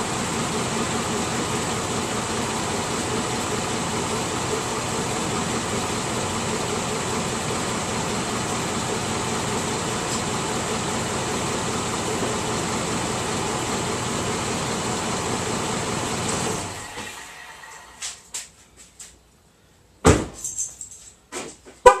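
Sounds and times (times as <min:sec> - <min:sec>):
car engine idling: 0:00.0 - 0:17.2
loud thump: 0:20.0 - 0:20.4.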